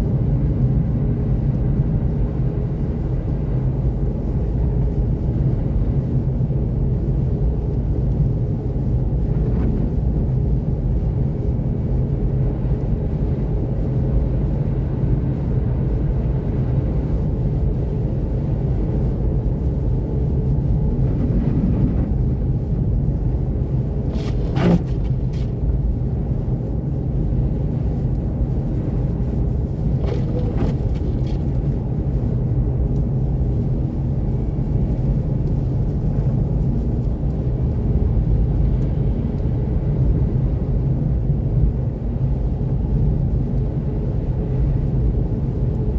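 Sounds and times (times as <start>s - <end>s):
tyre and road rumble: 23.7s - 26.0s, 29.7s - 31.9s.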